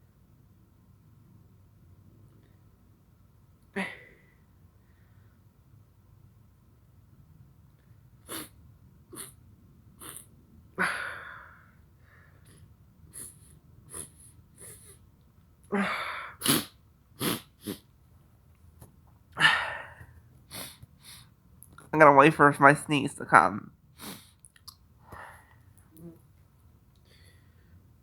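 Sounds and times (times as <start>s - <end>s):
man sniffing sharply: 16.4s - 17.8s, 20.5s - 21.3s, 24.0s - 24.4s.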